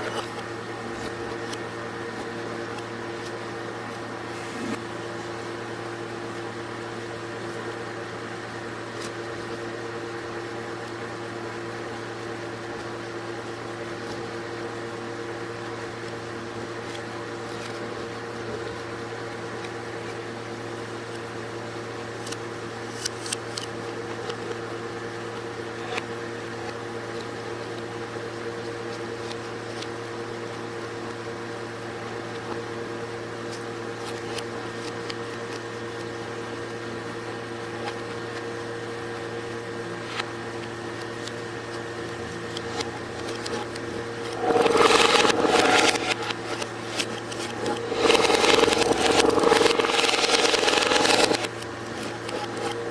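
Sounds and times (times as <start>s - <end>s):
ice cream machine humming: 0.0s - 52.9s.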